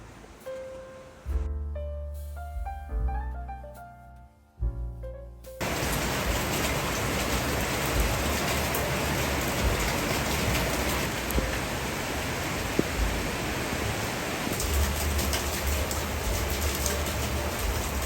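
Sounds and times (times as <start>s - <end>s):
faint raindrop ticks: 5.6s - 11.6s, 14.5s - 18.0s
steady rainfall: 5.6s - 18.0s.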